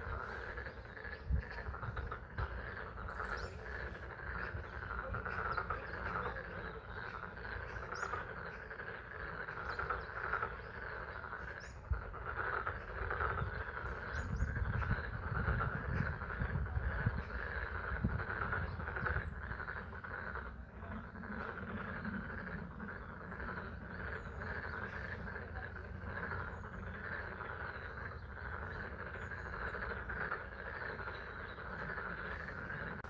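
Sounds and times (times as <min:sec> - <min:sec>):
frogs calling in chorus: 0:00.0 - 0:33.0.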